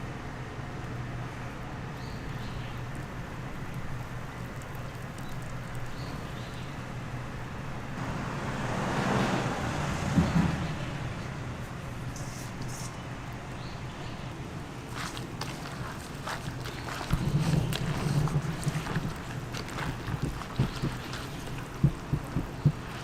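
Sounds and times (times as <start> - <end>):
traffic hum: 0.0 - 23.0
vehicle passing by: 8.0 - 12.2.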